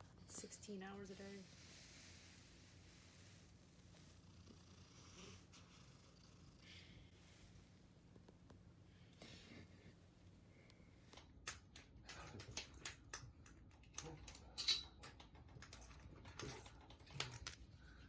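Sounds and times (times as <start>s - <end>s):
light irregular clicks and taps: 10.6s - 18.0s.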